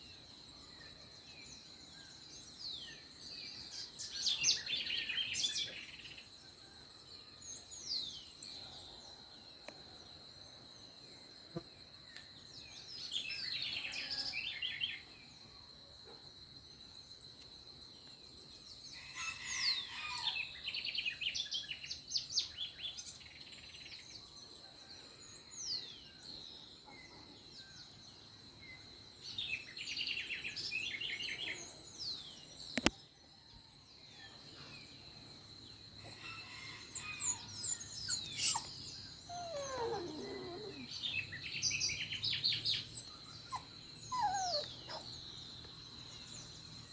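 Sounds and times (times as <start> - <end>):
steady high insect tone: 0.0 - 46.9
birds chirping and trilling: 34.2 - 46.9.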